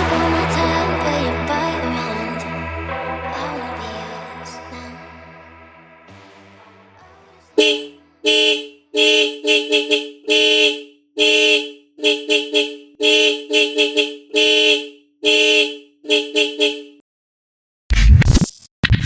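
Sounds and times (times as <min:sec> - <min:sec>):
dual-tone horn blasts: 0:00.0 - 0:17.0.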